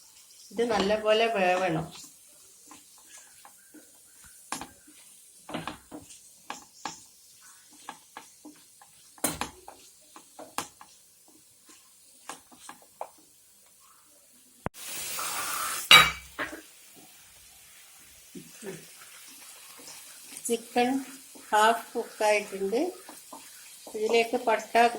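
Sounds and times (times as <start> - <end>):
utensil scraping frying pan: 0.0 - 13.4, 18.4 - 24.9
faint sizzle: 0.0 - 24.9.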